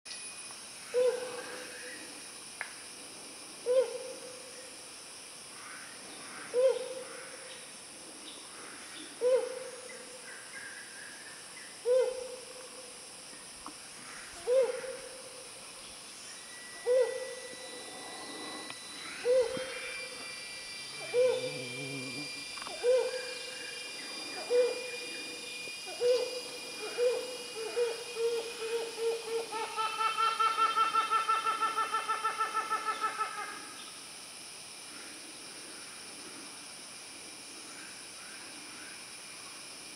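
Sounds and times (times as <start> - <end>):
hornbill hooting: 0.8 - 2.1, 14.2 - 15.2, 16.4 - 33.8.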